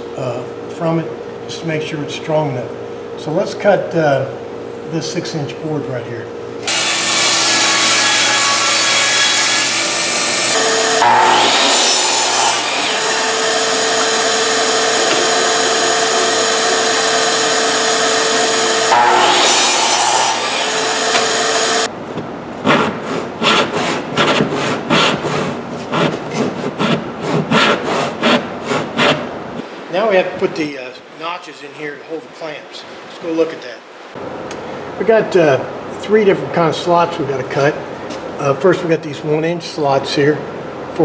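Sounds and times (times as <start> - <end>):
power saw cutting wood: 6.6 - 21.9.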